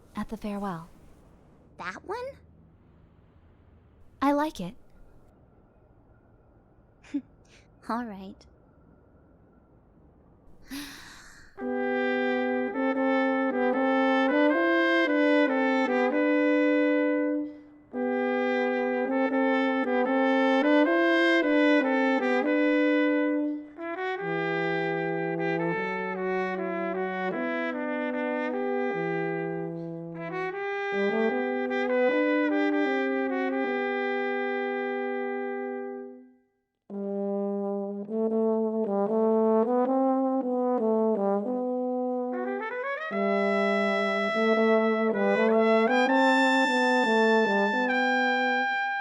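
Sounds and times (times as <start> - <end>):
trumpet melody: 11.6 - 49.0.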